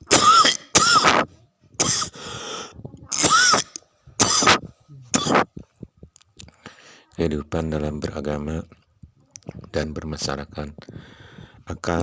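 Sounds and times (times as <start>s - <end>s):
person coughing hard: 0.0s - 2.3s, 3.1s - 5.6s
breathy intakes: 2.1s - 2.8s, 10.8s - 11.7s.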